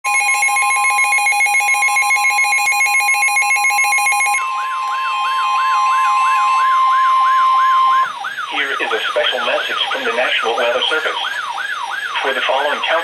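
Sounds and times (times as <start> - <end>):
steady alert tone: 0.1 - 7.4
siren-like sweeping tone: 3.3 - 13.0.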